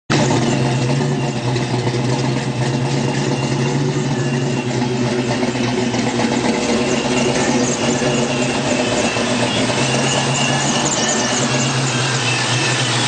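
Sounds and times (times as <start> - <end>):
car engine idling: 0.1 - 13.0
faint high whine: 2.7 - 13.0.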